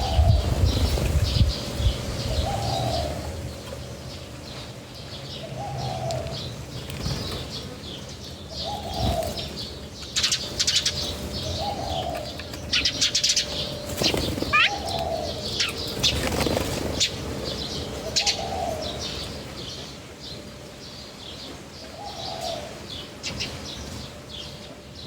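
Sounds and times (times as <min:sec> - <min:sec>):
dove cooing: 0:00.0 - 0:03.9, 0:05.4 - 0:07.8, 0:08.5 - 0:20.1, 0:21.8 - 0:23.6
small birds chirping: 0:00.0 - 0:25.0
wings flapping: 0:13.4 - 0:17.2.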